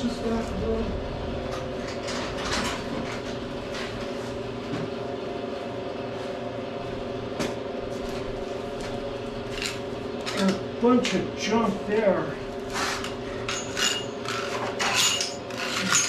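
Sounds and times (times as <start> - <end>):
steady machine hum: 0.0 - 16.0.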